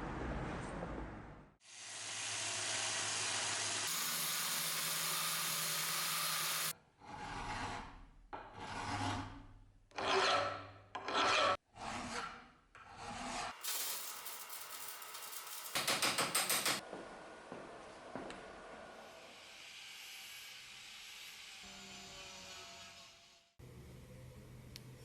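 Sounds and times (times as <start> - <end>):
sanding steel: 2.1 - 6.7, 13.5 - 16.8.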